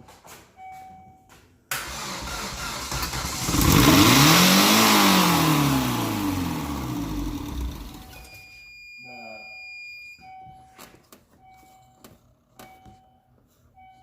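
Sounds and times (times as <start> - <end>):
engine revving loud: 1.9 - 8.0.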